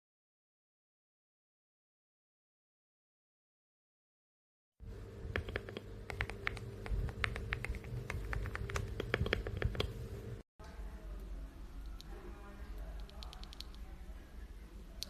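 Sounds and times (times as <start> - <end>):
steady low hum: 4.8 - 15.0
mechanical keyboard typing: 5.3 - 10.0, 13.0 - 13.8.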